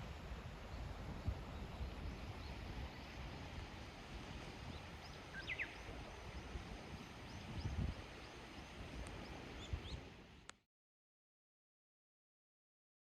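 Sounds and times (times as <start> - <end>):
wind buffeting microphone: 0.0 - 10.4
bird chirping: 4.7 - 6.4, 9.2 - 10.5.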